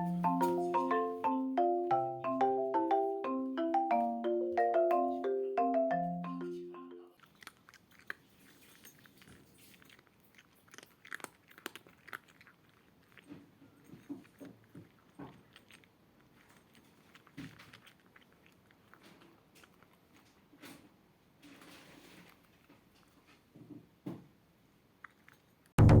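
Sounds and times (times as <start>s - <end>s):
cat crunching food: 7.1s - 20.9s, 25.0s - 25.7s.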